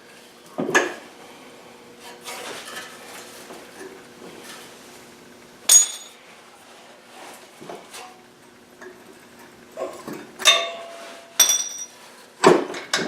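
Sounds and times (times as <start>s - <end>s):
ringing metal clink: 5.7s - 6.2s, 10.4s - 11.9s.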